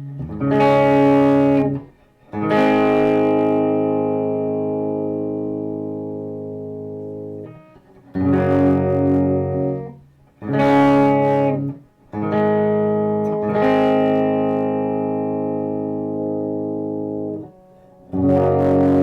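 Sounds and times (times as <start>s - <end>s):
electric guitar strummed chords: 0.0s - 19.0s.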